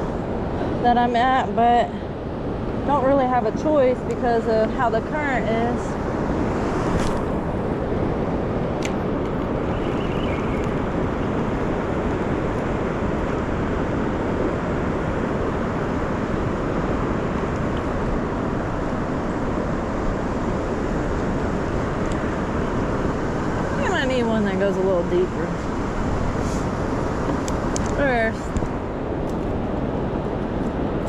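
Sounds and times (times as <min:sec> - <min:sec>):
wind buffeting microphone: 0:00.0 - 0:31.0.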